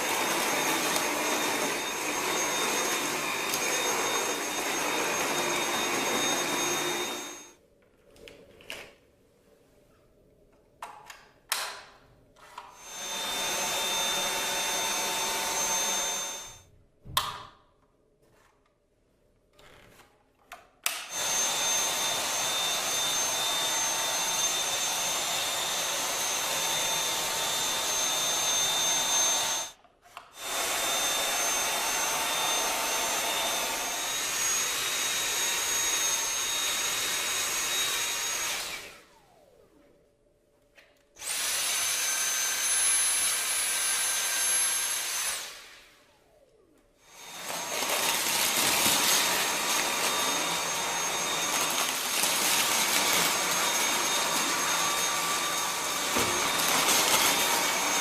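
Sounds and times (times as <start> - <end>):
vacuum cleaner running: 0.0 - 7.6, 12.5 - 16.6, 21.1 - 29.8, 30.4 - 40.0, 41.2 - 58.0.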